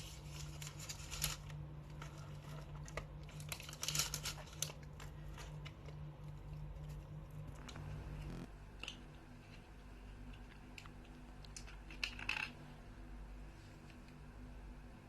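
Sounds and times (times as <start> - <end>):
steady low hum: 0.0 - 15.0
faint eating clicks and taps: 8.8 - 12.5.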